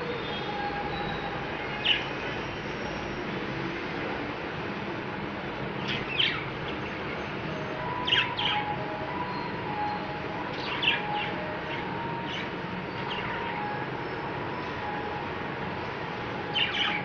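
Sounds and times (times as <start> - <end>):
steady background noise: 0.0 - 17.0
budgerigars chirping: 5.8 - 6.8, 8.0 - 8.7, 10.0 - 13.8, 16.5 - 17.0.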